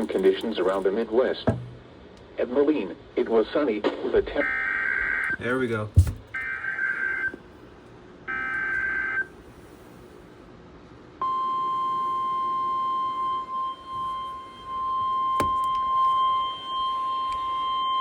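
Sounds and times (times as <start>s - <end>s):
steady warning alarm tone: 4.4s - 7.4s, 8.3s - 9.4s, 11.2s - 18.0s.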